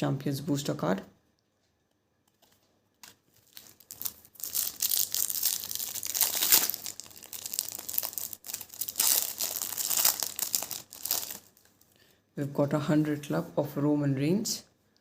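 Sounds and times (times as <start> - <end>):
wrapper crinkling and tearing: 2.3 - 12.0.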